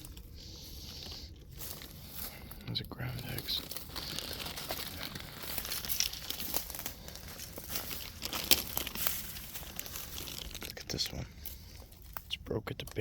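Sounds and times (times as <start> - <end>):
dry bamboo leaves crackling: 0.0 - 13.0.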